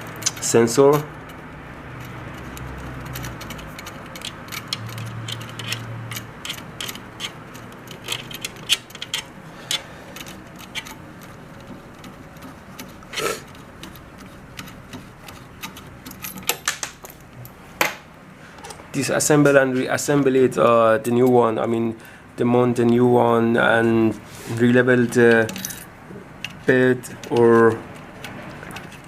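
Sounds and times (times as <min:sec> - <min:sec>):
small parts clicking: 0:00.0 - 0:17.2, 0:25.2 - 0:29.0.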